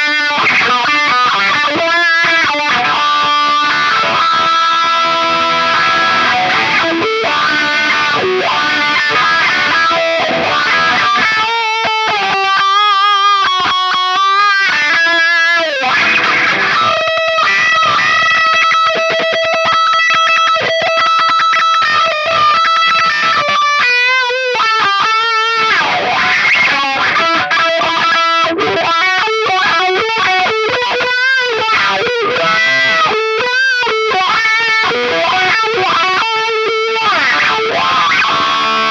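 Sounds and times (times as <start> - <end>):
distorted wah electric guitar: 0.0 - 38.9.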